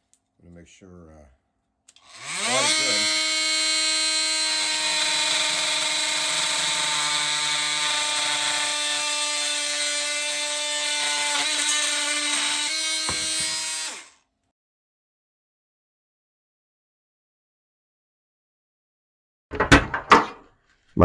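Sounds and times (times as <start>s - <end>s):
oscillating multi-tool whining: 2.0s - 14.2s.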